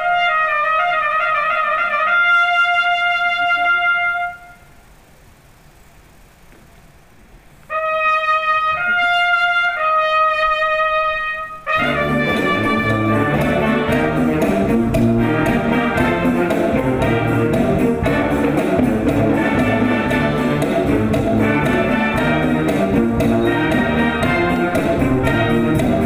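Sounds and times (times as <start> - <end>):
solo brass long notes: 0.0 - 4.8, 7.6 - 26.0
ensemble music with steady beat: 11.8 - 26.0.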